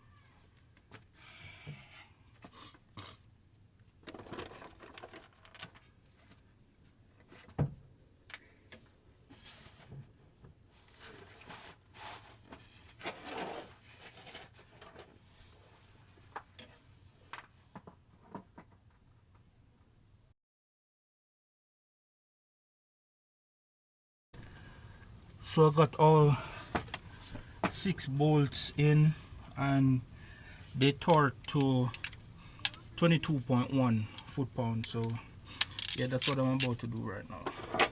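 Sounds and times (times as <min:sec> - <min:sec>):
metal hand tools clicking and scraping: 0:30.9 - 0:33.0, 0:34.2 - 0:37.9.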